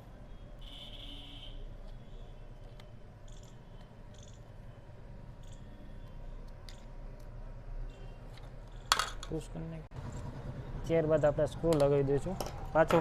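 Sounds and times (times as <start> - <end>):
screwdriver ticking on small screws: 2.7 - 4.5.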